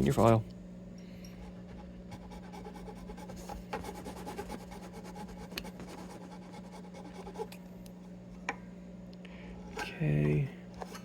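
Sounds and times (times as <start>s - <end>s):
low steady hum: 0.0s - 11.0s
hand file scratching: 1.4s - 7.6s.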